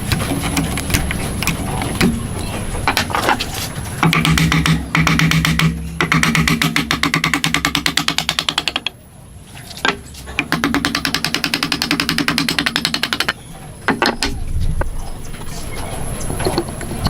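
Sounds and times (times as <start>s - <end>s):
power tool rattling: 2.8s - 8.9s, 10.4s - 14.4s.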